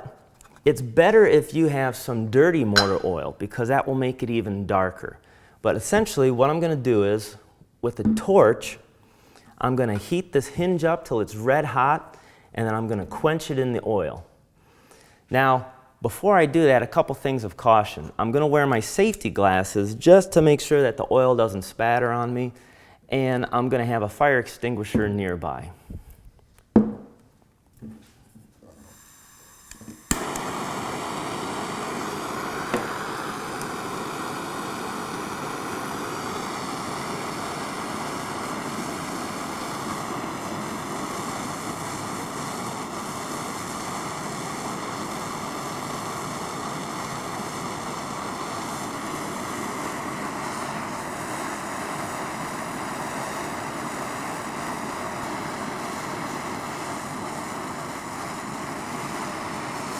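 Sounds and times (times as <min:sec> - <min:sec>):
blowtorch flame hissing: 0:02.7 - 0:03.3, 0:28.8 - 0:59.9
blowtorch ignition click: 0:02.8 - 0:03.3, 0:28.8 - 0:59.9.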